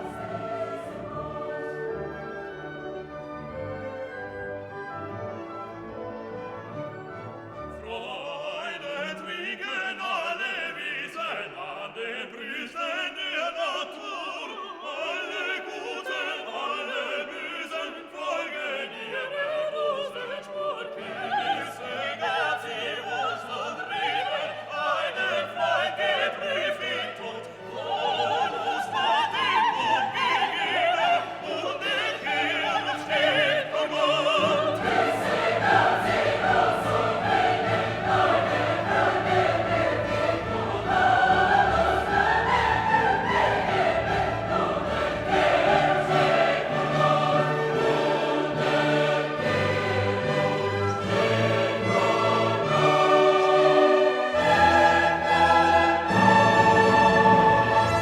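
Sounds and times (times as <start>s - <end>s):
operatic singing: 0.0s - 4.9s, 7.5s - 58.0s
orchestra playing: 0.0s - 9.3s, 32.3s - 58.0s.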